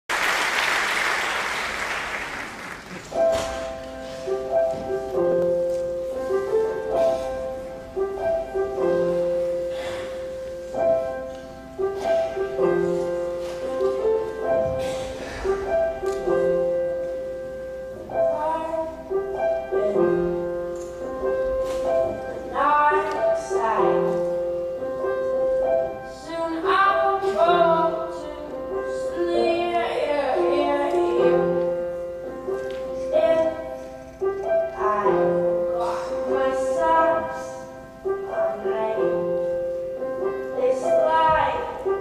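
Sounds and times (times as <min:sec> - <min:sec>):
audience applause: 0:00.1 - 0:03.1
solo piano: 0:00.8 - 0:42.0.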